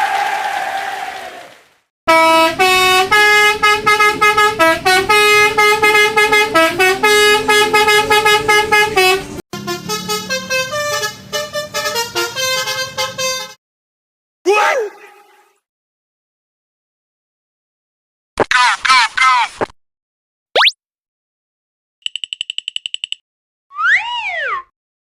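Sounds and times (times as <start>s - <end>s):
horn honking a tune: 2.1s - 13.6s.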